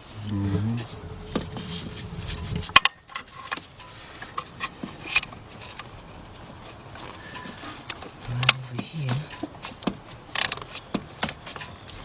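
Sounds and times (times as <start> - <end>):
low handling rumble: 0.0 - 3.4.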